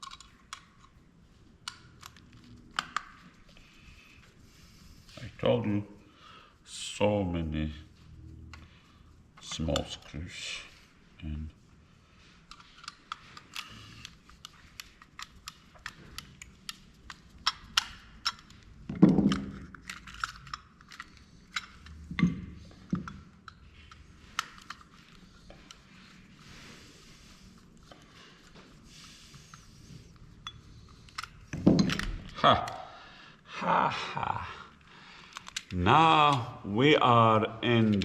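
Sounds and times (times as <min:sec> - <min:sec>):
plastic and metal parts clicking: 0:00.0 - 0:01.0, 0:01.6 - 0:03.3, 0:12.5 - 0:25.9, 0:30.8 - 0:32.8, 0:35.2 - 0:36.4.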